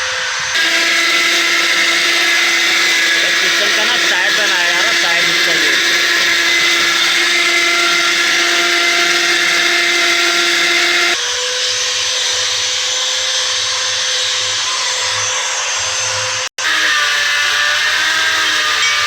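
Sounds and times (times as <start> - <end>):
machine tool motor whirring: 0.4 - 11.3.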